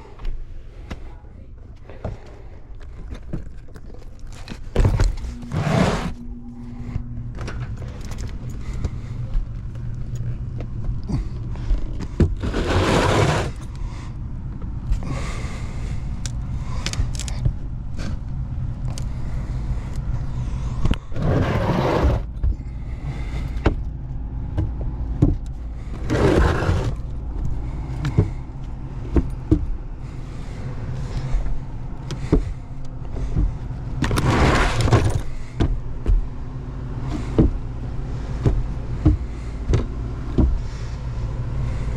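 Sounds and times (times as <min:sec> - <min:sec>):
steady low hum: 0:00.0 - 0:41.9
scraping and rustling: 0:03.6 - 0:09.2, 0:11.2 - 0:13.8, 0:34.0 - 0:35.6.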